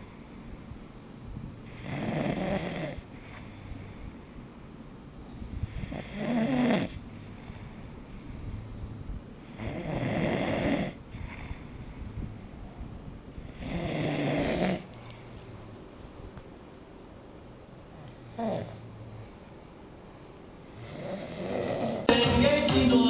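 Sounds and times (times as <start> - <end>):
quiet breathing: 0.0 - 2.0, 2.9 - 6.2, 6.9 - 10.0, 10.6 - 16.3, 17.9 - 22.0.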